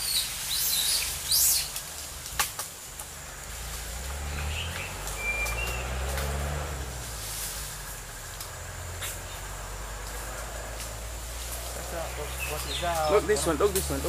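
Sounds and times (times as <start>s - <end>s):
birds chirping: 0.0s - 14.0s
bird whistled note: 4.5s - 5.8s.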